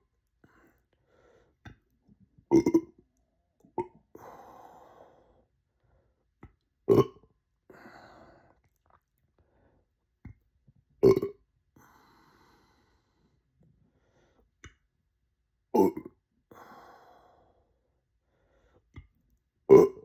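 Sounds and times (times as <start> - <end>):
person burping: 2.5 - 3.0, 6.9 - 7.2, 11.0 - 11.4, 15.8 - 16.2, 19.7 - 20.0
soft breath out: 4.2 - 6.2, 11.8 - 14.5, 16.5 - 18.9.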